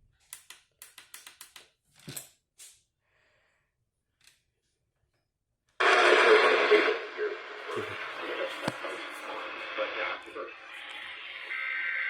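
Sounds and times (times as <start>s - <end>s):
loud noisy radio audio: 5.8s - 12.0s.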